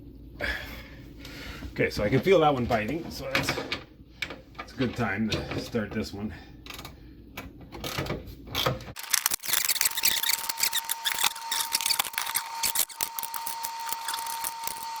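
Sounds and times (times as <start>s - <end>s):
screwdriver turning screw into wood: 9.0s - 15.0s.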